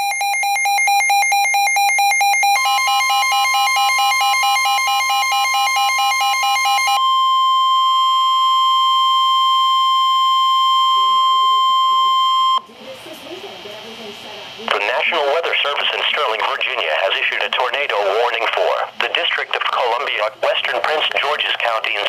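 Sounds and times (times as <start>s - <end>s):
pulsing electronic alarm tones: 0.0s - 12.7s
steady warning alarm tone: 0.0s - 12.7s.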